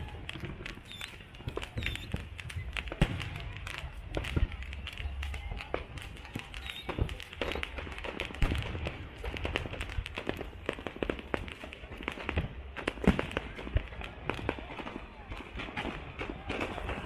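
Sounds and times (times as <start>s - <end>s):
crowd chatter: 0.0s - 17.0s
fireworks cracking and popping: 0.0s - 17.0s.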